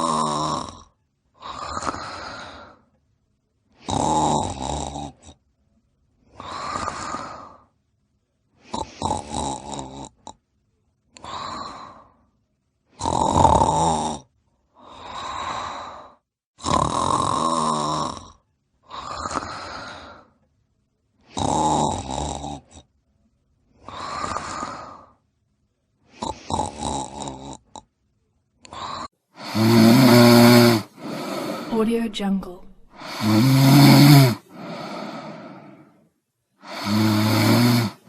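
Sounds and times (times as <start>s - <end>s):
person snoring: 0.0s - 2.8s, 3.8s - 5.4s, 6.3s - 7.7s, 8.6s - 10.4s, 11.2s - 12.2s, 13.0s - 20.3s, 21.2s - 22.8s, 23.8s - 25.2s, 26.1s - 27.8s, 28.6s - 36.0s, 36.6s - 38.0s.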